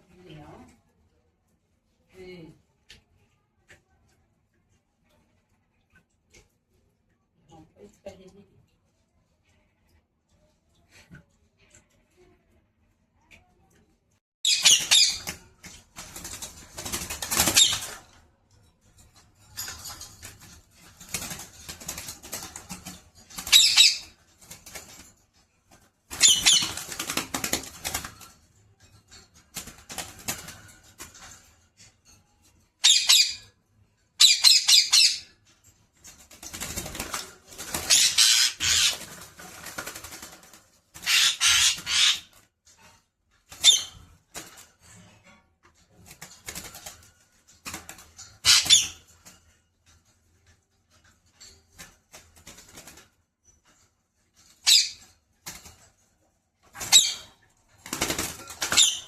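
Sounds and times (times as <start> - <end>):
parrot flapping wings: 14.6 - 32.5, 35.2 - 59.0.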